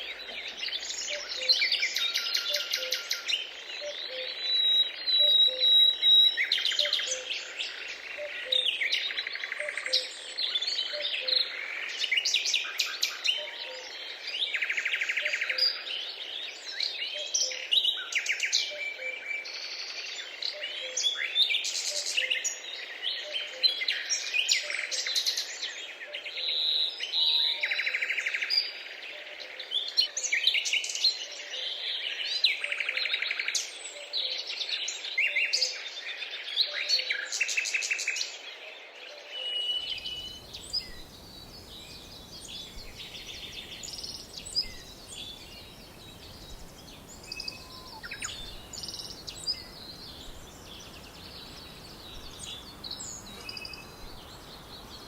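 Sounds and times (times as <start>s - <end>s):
songbirds singing and calling: 0.0s - 55.0s
steady hiss: 39.8s - 55.0s.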